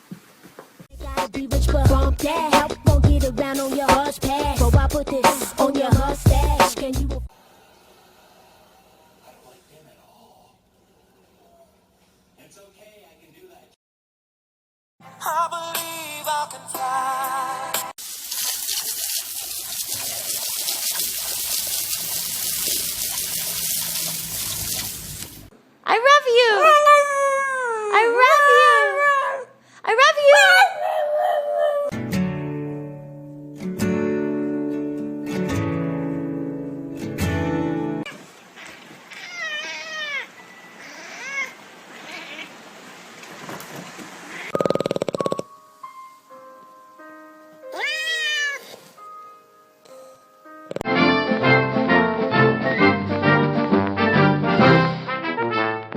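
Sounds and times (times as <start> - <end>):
running water hiss: 18.0 - 25.5, 38.1 - 45.4
cat meowing: 39.1 - 42.6, 47.7 - 48.8.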